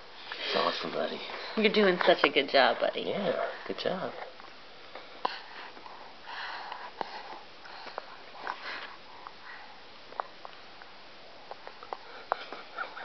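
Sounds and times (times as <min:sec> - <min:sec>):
baby sniffing: 0:05.2 - 0:09.8, 0:11.7 - 0:13.0.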